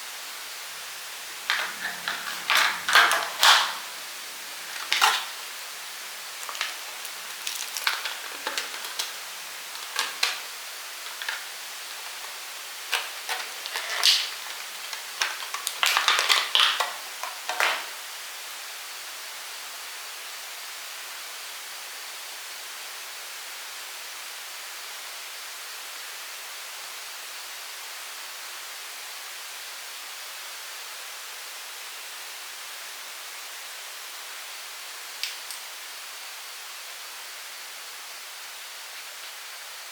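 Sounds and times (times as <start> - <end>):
steady hiss: 0.0 - 28.3, 31.4 - 39.9
packaging clicks and rustling: 1.4 - 18.0.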